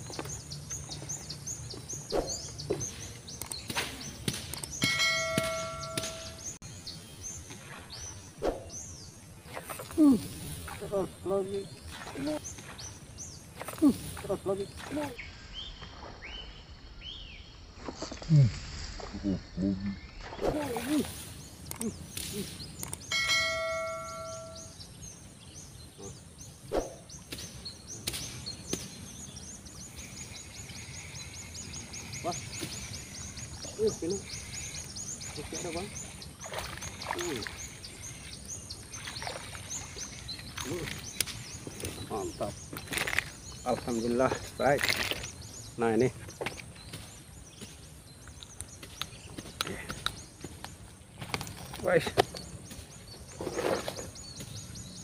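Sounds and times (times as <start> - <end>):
birds chirping: 0.0 - 55.0
sharp clicks: 3.3 - 6.3, 21.6 - 23.1
high repeated chirps: 4.7 - 6.6, 22.9 - 24.7
steady ringing tone: 4.8 - 6.5, 23.1 - 24.7.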